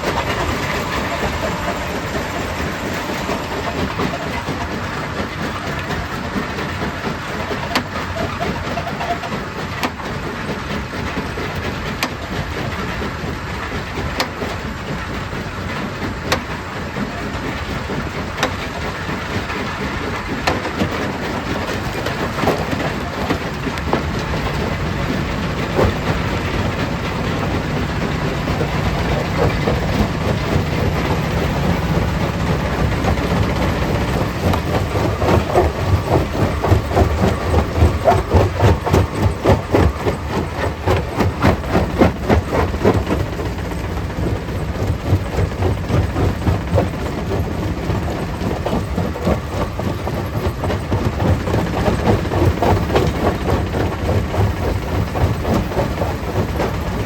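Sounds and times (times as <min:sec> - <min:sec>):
stone crusher droning: 0:00.0 - 0:07.0, 0:18.4 - 0:57.0
rock crushing clatter: 0:20.2 - 0:57.0.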